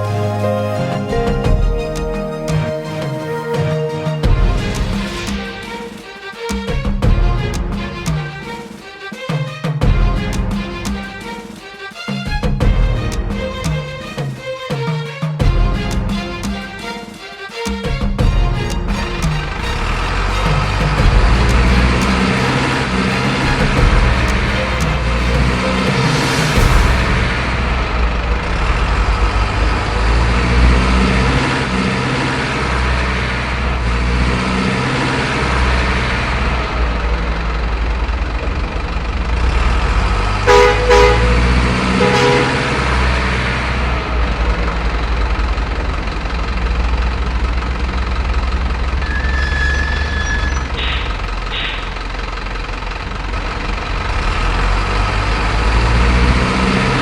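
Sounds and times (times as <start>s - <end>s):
horn toots: 0.0s - 6.0s, 18.3s - 27.8s, 40.4s - 44.2s.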